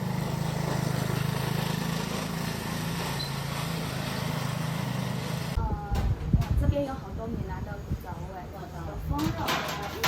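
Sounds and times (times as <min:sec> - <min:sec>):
small engine running: 0:00.0 - 0:05.6
outdoor noise: 0:00.0 - 0:10.0.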